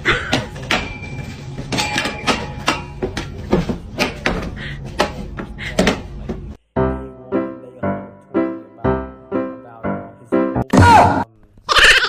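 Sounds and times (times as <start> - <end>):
person speaking: 6.7 - 11.6.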